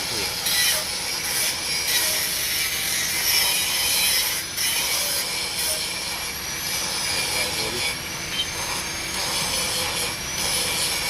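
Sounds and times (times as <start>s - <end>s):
tool rasping on metal: 0.0s - 11.0s.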